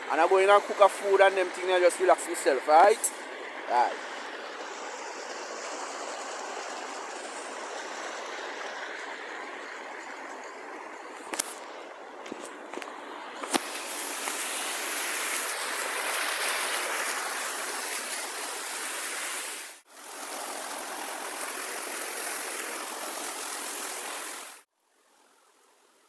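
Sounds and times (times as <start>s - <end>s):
river water rushing: 0.0s - 24.6s.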